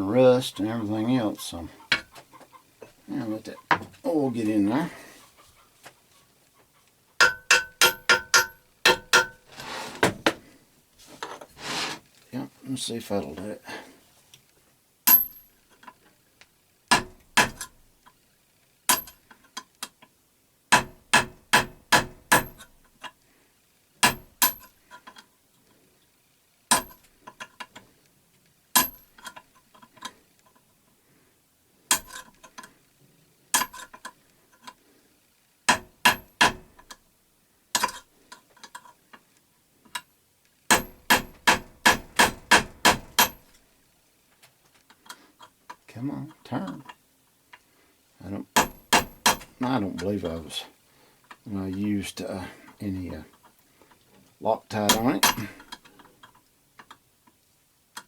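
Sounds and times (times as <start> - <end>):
hammer tapping on metal: 7.2 - 9.4, 20.7 - 22.6, 40.7 - 43.4, 48.6 - 49.5.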